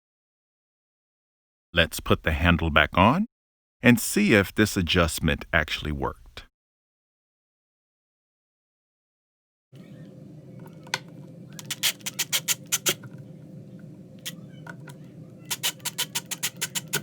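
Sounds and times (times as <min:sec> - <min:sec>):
low hum: 0:09.8 - 0:15.8
screwdriver tool clicking: 0:15.5 - 0:17.0.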